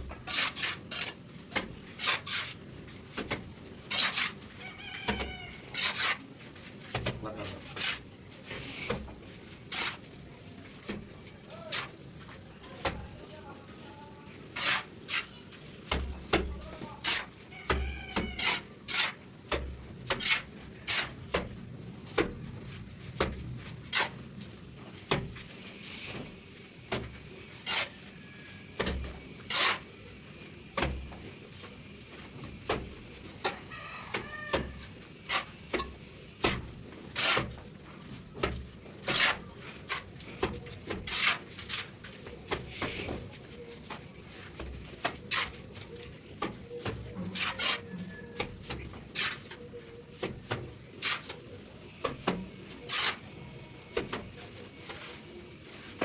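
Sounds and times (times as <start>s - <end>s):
trowel slapping mortar: 0.1s - 2.6s, 3.2s - 4.4s, 14.5s - 15.3s, 35.3s - 37.7s, 38.4s - 43.0s, 52.0s - 53.4s.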